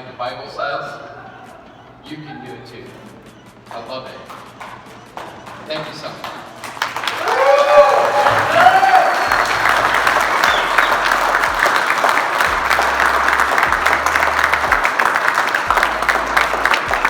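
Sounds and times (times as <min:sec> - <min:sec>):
crowd applauding: 0:03.6 - 0:17.0.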